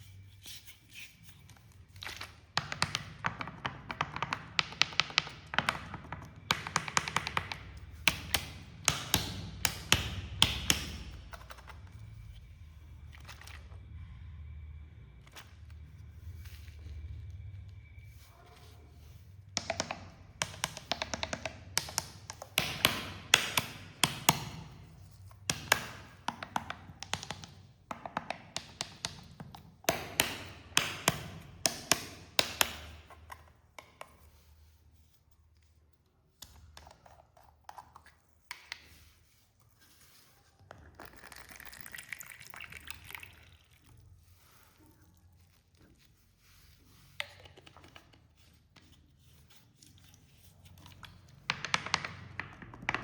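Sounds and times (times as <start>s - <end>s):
cola pouring and splashing: 41.0s - 44.5s.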